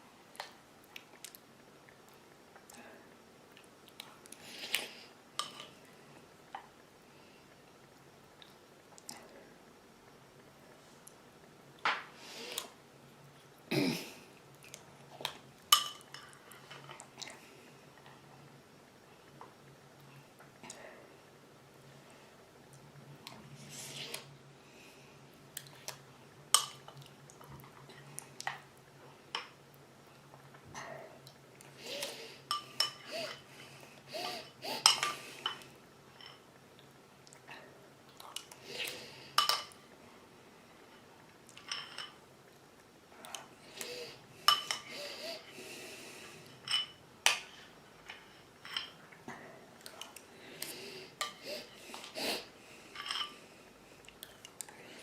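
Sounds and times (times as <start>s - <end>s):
faint steady hum: 0.0s - 55.0s
cutlery clinking against a dish: 44.5s - 44.9s, 46.6s - 47.4s.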